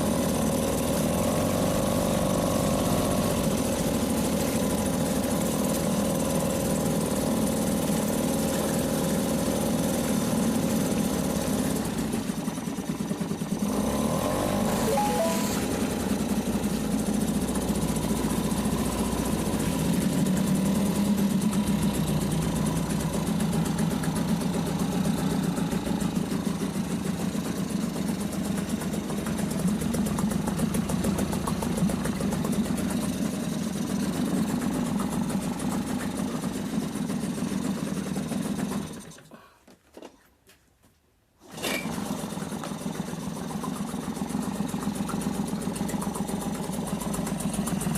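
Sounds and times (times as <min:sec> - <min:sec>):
outboard motor running: 0:00.0 - 0:14.8, 0:15.8 - 0:39.2, 0:42.0 - 0:47.9.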